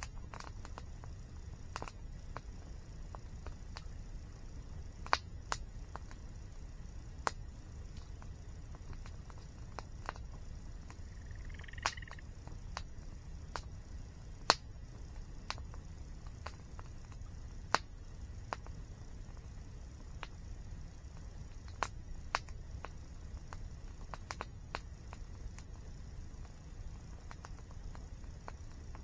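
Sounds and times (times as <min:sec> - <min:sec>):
campfire crackling and popping: 0:00.0 - 0:29.0
faint bird chirp: 0:10.5 - 0:12.3.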